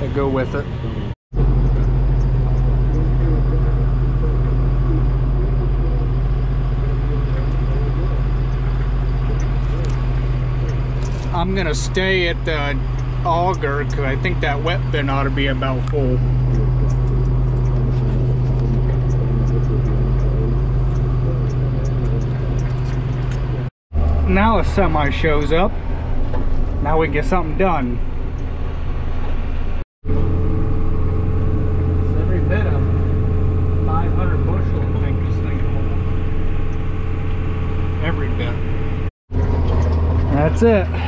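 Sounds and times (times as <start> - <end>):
diesel engine droning: 0.0 - 41.0.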